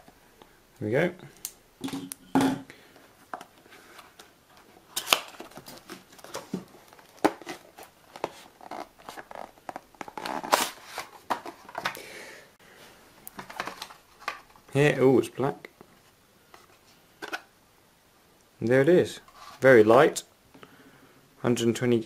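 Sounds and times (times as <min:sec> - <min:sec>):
cardboard packaging rustling: 0:03.8 - 0:12.0, 0:13.3 - 0:14.7.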